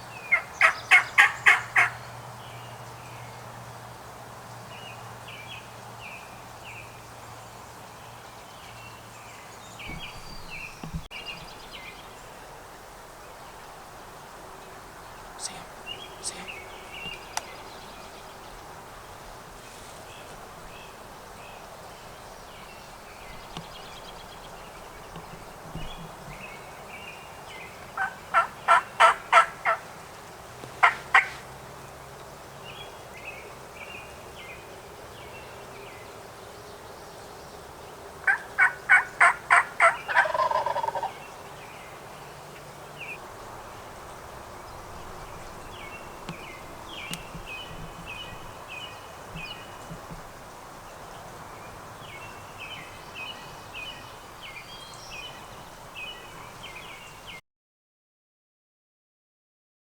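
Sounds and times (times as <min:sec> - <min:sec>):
faint songbirds chirping: 0:00.0 - 0:57.4
turkey gobbling: 0:00.3 - 0:02.0, 0:28.0 - 0:29.8, 0:30.8 - 0:31.4, 0:38.2 - 0:41.1.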